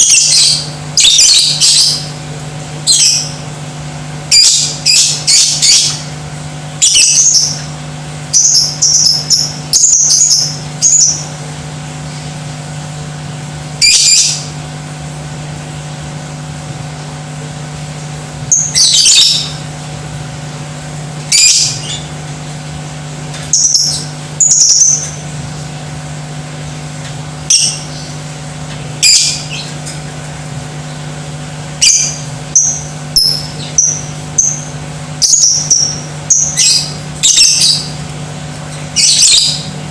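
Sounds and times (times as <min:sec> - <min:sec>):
lovebird chirping and screeching: 0:00.0 - 0:02.1, 0:02.9 - 0:03.4, 0:04.3 - 0:06.0, 0:06.8 - 0:07.7, 0:08.3 - 0:11.3, 0:13.8 - 0:14.5, 0:18.5 - 0:19.6, 0:21.3 - 0:22.1, 0:23.5 - 0:25.2, 0:27.5 - 0:28.1, 0:29.0 - 0:29.8, 0:31.8 - 0:38.0, 0:39.0 - 0:39.7
steady low hum: 0:00.0 - 0:39.9.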